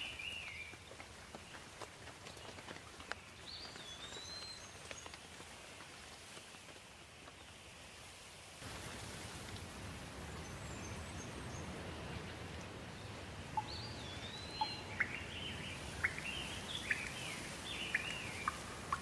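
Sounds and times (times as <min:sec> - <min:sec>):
sharp bird calls and whistles: 0:00.0 - 0:00.8, 0:03.2 - 0:05.1, 0:13.6 - 0:19.0
steady rain: 0:00.0 - 0:19.0
birds chirping: 0:10.2 - 0:19.0.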